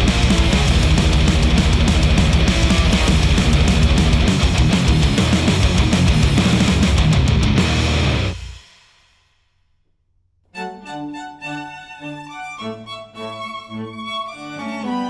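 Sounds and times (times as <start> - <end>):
heavy rock music: 0.0 - 8.6.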